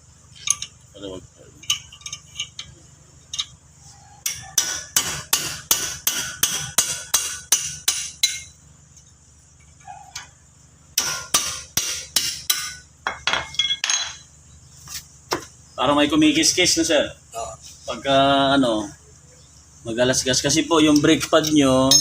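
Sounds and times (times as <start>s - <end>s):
hammer striking metal: 4.2s - 8.6s, 11.0s - 14.2s, 21.4s - 22.0s.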